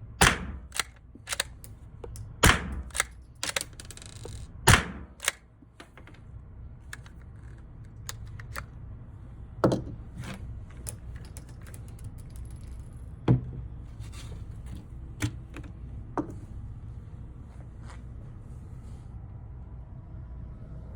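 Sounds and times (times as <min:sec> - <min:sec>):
rifle shots: 0:00.2 - 0:01.6, 0:02.4 - 0:03.6, 0:04.7 - 0:05.4
rifle bolt clicks: 0:00.2 - 0:06.2.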